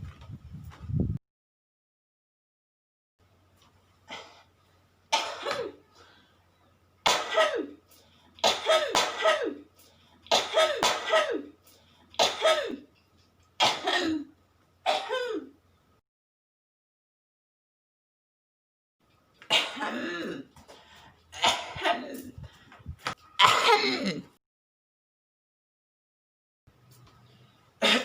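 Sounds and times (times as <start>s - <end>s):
person coughing: 5.2s - 5.9s, 7.1s - 7.8s, 8.4s - 9.7s, 10.3s - 11.6s, 12.2s - 12.9s, 13.6s - 14.3s, 14.9s - 15.6s, 19.5s - 20.5s, 21.4s - 22.4s, 23.4s - 24.3s, 27.8s - 28.0s.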